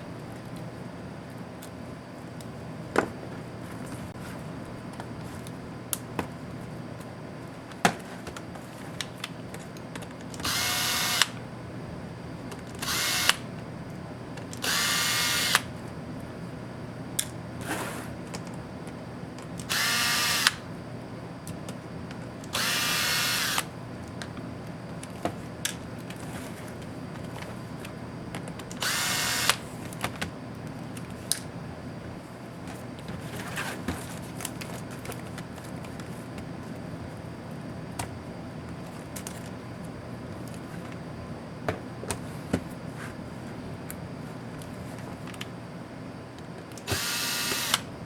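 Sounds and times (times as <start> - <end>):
electric screwdriver whirring: 10.4 - 11.4, 12.8 - 13.4, 14.6 - 15.7, 19.6 - 20.6, 22.5 - 23.7, 28.8 - 29.6, 46.8 - 47.9.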